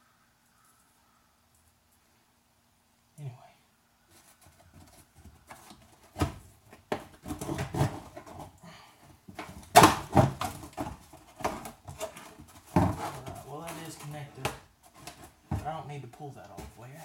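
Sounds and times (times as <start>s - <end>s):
plastic scraping and knocking: 4.1s - 8.6s, 9.2s - 17.0s.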